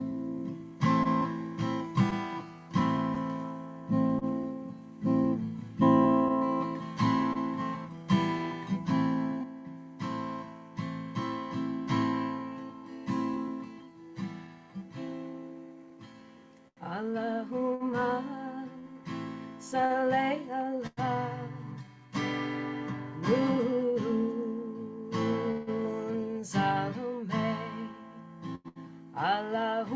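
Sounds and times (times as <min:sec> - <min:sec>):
person singing a devotional chant: 0:16.8 - 0:19.0, 0:19.6 - 0:21.8, 0:23.2 - 0:28.0, 0:29.2 - 0:29.9.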